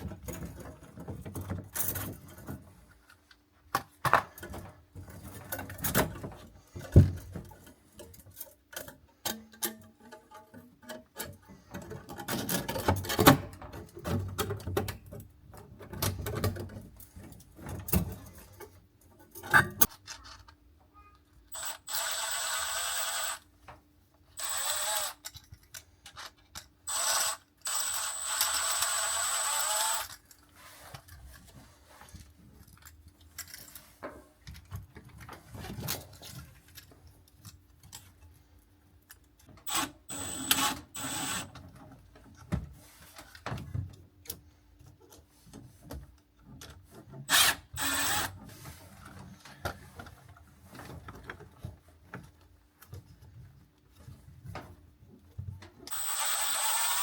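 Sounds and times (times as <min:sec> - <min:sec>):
knocking and scraping of parts: 0:00.0 - 0:20.7, 0:30.1 - 0:39.7, 0:41.5 - 0:47.4, 0:48.4 - 0:55.9
small power tool whining: 0:24.4 - 0:25.2, 0:26.9 - 0:30.1, 0:55.9 - 0:57.0.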